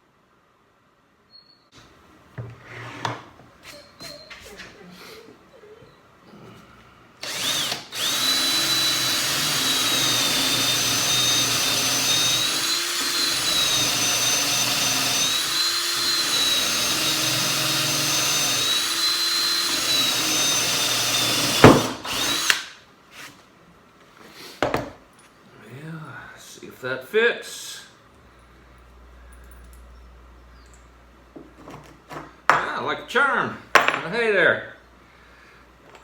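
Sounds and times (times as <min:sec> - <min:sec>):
rotary tool whining: 0:07.2 - 0:22.7.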